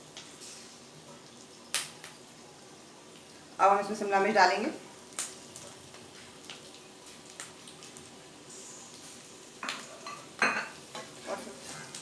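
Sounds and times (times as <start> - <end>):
faint frying sizzle: 0.0 - 12.0.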